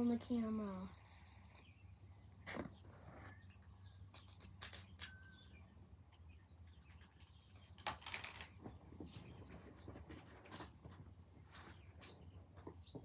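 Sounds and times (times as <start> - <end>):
plastic toys rustling: 6.8 - 11.0.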